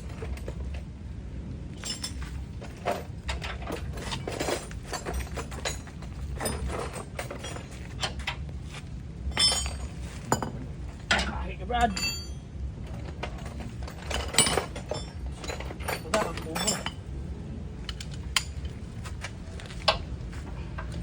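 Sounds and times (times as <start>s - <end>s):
steady low hum: 0.0s - 21.0s
metal tools clinking: 1.8s - 8.3s, 9.3s - 17.1s.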